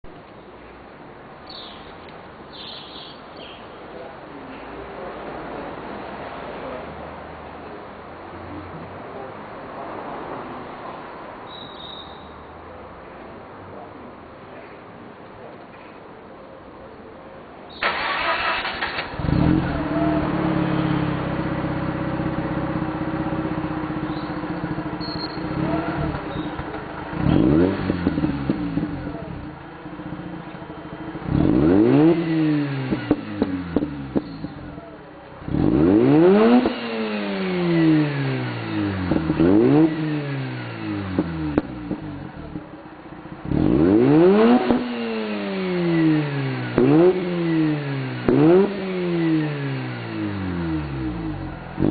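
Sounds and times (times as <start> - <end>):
rotary engine idling and revving: 17.8 - 51.9.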